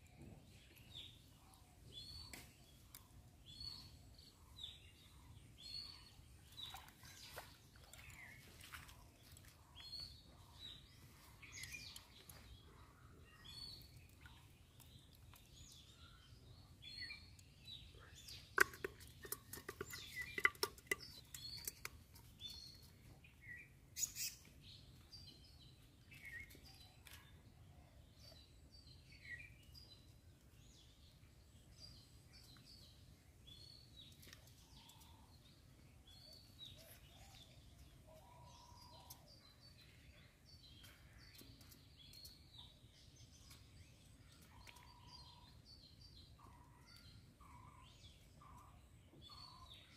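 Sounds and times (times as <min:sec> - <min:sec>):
small birds chirping: 0:00.0 - 0:49.9.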